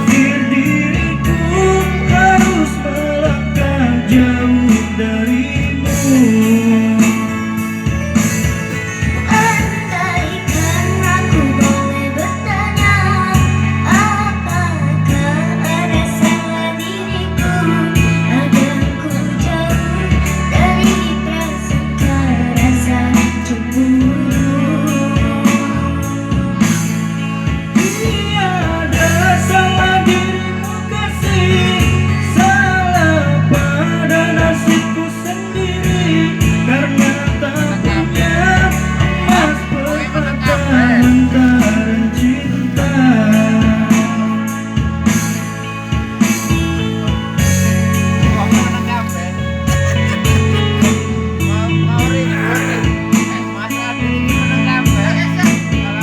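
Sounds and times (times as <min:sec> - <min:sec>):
steady beat: 0:00.0 - 0:11.9, 0:27.5 - 0:56.0
bass: 0:00.0 - 0:56.0
guitar: 0:00.0 - 0:56.0
girl singing: 0:09.2 - 0:26.9.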